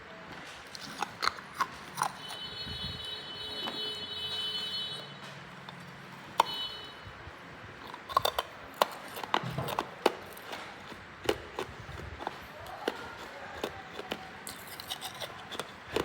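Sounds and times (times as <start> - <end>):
ice crunching between teeth: 0.6 - 2.4, 7.8 - 16.0.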